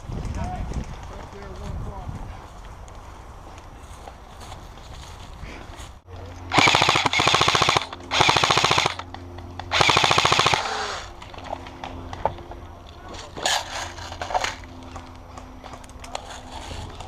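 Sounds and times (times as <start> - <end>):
airsoft rifle firing bursts: 6.5 - 9.1, 9.7 - 10.9.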